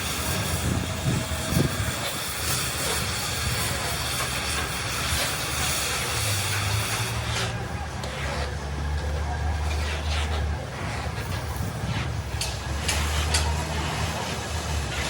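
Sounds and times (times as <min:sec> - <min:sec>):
machinery hiss: 0:00.0 - 0:07.4
low machinery hum: 0:00.0 - 0:15.0.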